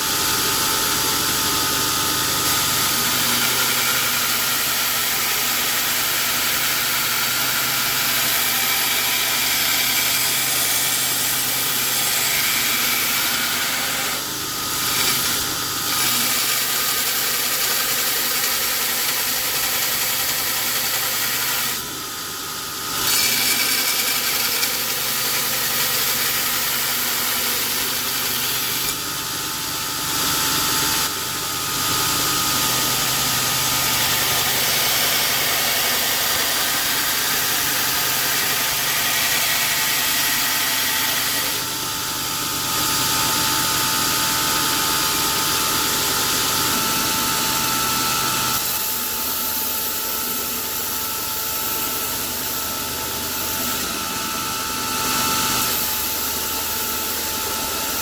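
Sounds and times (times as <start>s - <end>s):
workshop machine hissing: 0.0s - 43.1s.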